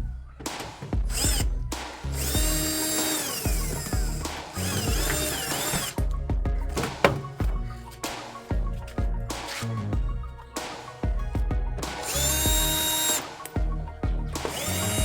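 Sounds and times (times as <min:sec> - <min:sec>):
music with steady beat: 0:00.0 - 0:15.0
power drill whining: 0:00.9 - 0:06.0, 0:12.0 - 0:13.6, 0:14.3 - 0:15.0.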